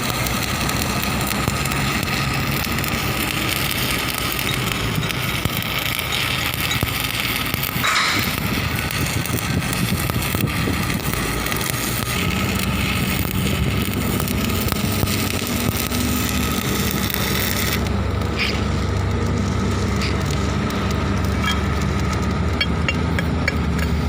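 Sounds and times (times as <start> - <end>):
welding arc crackling: 0.0 - 24.0.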